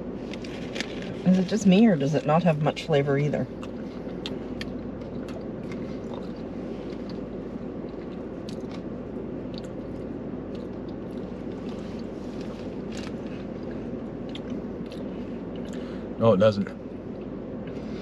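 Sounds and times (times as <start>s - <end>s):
steady low hum: 0.0s - 18.0s
person chewing food: 3.5s - 16.0s.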